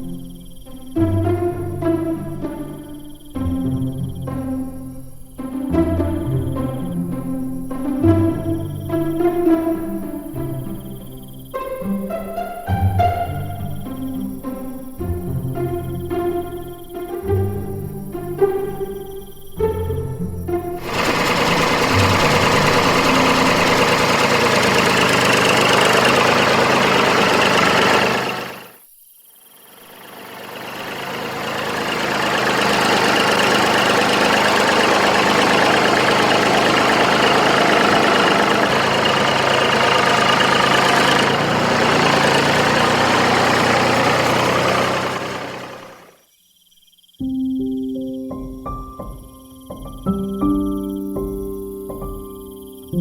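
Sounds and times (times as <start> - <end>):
small motor running: 20.8 - 28.8, 29.9 - 46.2.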